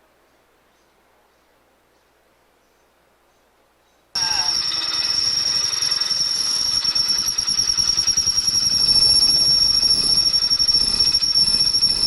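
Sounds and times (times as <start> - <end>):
power drill cutting metal: 4.2 - 12.0.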